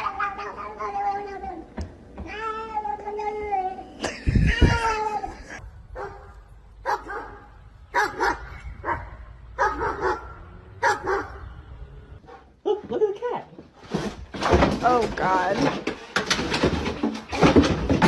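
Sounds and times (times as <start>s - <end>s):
dog barking: 6.0s - 11.4s.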